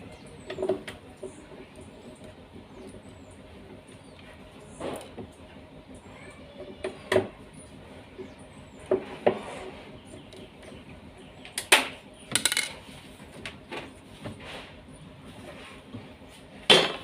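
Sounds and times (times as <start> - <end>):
metal tools clinking and knocking: 12.3 - 12.8.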